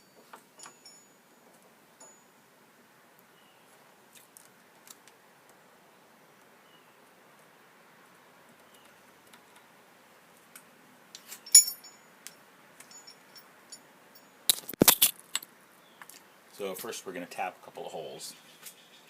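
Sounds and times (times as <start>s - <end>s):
metal hardware clinking: 11.2s - 15.5s.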